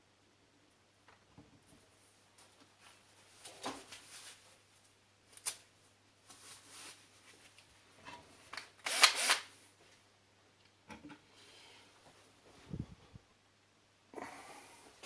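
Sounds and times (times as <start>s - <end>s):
rustling: 1.8s - 8.6s.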